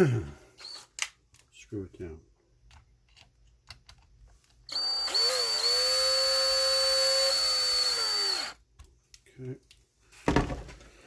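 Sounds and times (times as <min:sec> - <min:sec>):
power screwdriver motor whine: 0:04.7 - 0:08.6.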